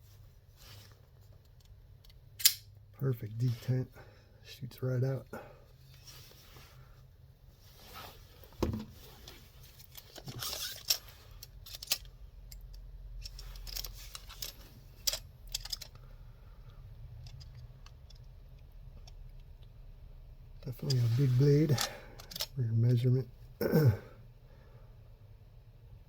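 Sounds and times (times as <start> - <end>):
handling rustles: 0.0 - 1.8, 5.7 - 16.0, 20.7 - 23.0.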